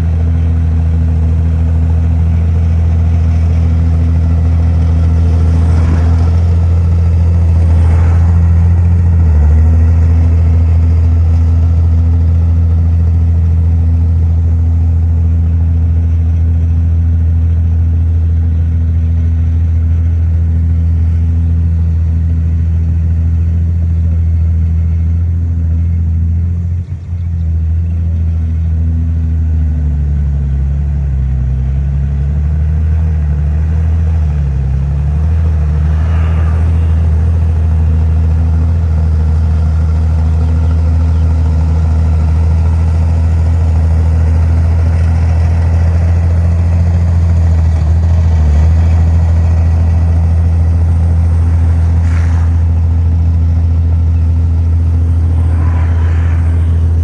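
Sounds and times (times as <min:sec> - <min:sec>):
heavy diesel engine running: 0:00.0 - 0:57.0.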